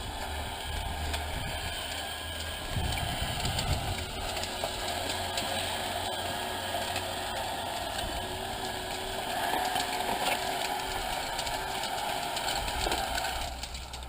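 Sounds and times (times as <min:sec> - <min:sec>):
clicks and crackles: 0:00.0 - 0:14.0
electric motors running: 0:00.0 - 0:14.0.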